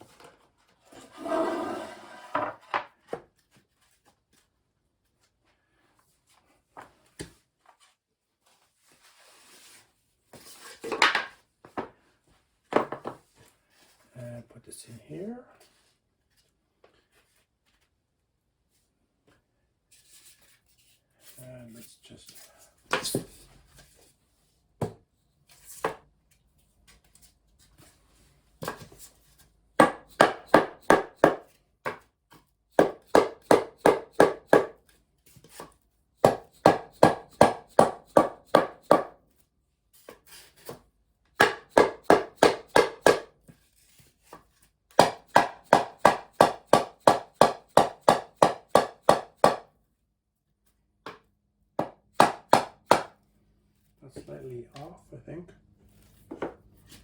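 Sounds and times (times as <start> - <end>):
rapid knocking of tile into joint: 29.8 - 32.0, 32.7 - 34.8, 35.6 - 39.2, 41.4 - 43.4, 44.9 - 49.7, 51.0 - 53.2.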